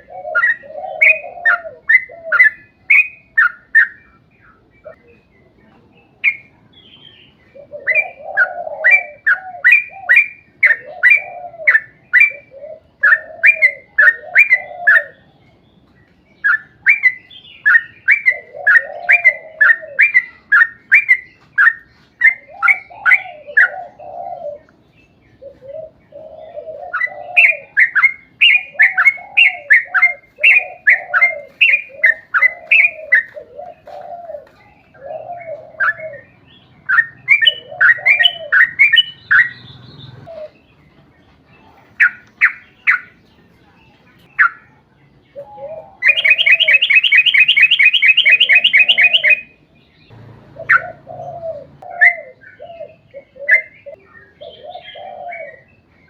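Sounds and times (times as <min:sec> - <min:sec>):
bird singing rapid falling notes: 0:35.0 - 0:41.1, 0:44.2 - 0:55.9.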